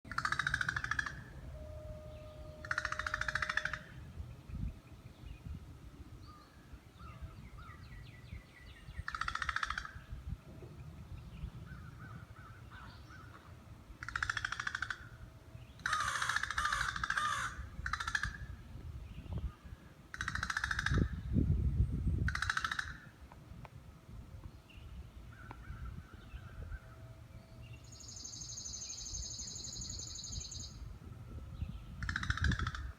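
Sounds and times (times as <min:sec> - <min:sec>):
bird harsh raspy calls: 0:00.1 - 0:01.4, 0:02.0 - 0:04.2, 0:08.9 - 0:10.2, 0:11.7 - 0:18.6, 0:19.5 - 0:21.3, 0:22.2 - 0:23.1, 0:31.9 - 0:32.9.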